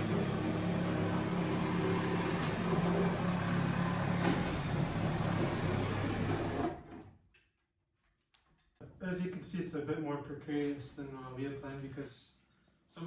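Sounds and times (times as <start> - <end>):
reciprocating saw cutting wood: 0.0 - 6.8.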